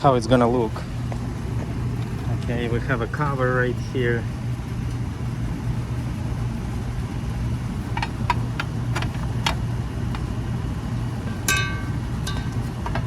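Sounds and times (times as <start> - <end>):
low machine hum: 0.0 - 13.0
sharp metallic clink: 11.4 - 12.6.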